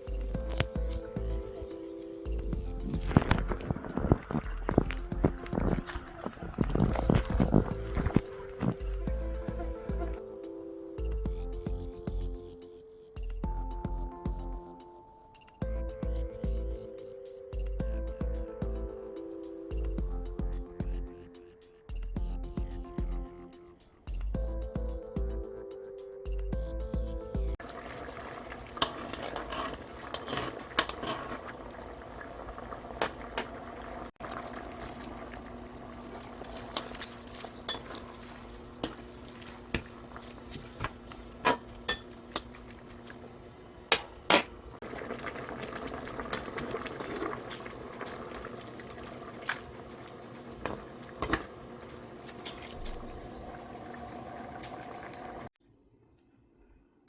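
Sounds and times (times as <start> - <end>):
water boiling in a pot: 2.4 - 10.1, 27.6 - 55.5
utensils clinking on cookware: 28.8 - 31.4, 36.7 - 38.2, 41.4 - 42.5.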